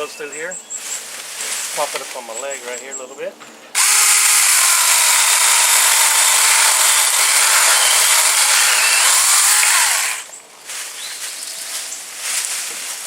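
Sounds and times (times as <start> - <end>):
electric chainsaw cutting wood: 3.8 - 10.3.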